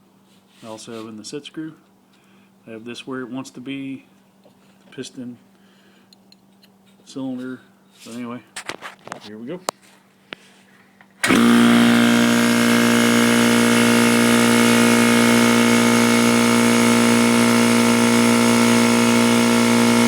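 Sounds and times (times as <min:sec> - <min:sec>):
air compressor running: 0:11.2 - 0:20.0.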